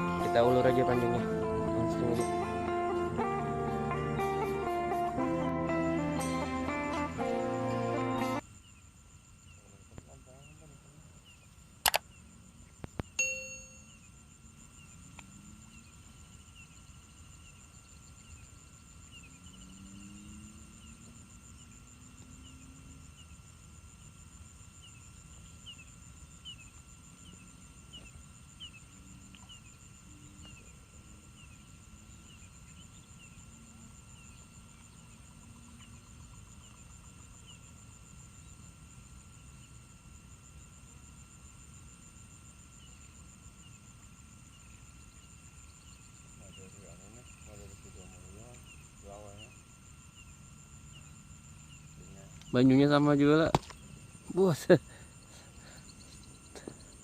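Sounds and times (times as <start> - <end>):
high insect drone: 0.0 - 57.0
sharp click: 11.8 - 12.1
bell-like ding: 13.2 - 14.0.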